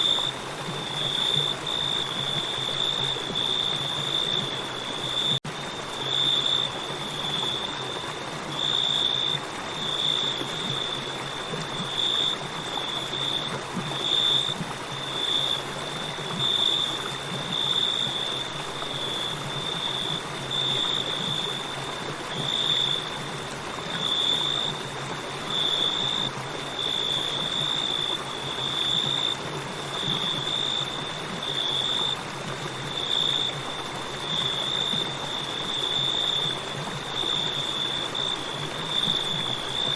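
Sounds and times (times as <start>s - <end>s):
crickets chirping: 0.0s - 24.8s, 25.4s - 39.9s.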